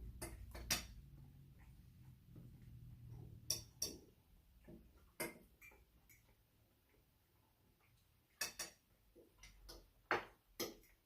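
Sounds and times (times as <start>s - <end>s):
utensils clicking on plate: 3.4s - 4.2s, 8.4s - 9.9s.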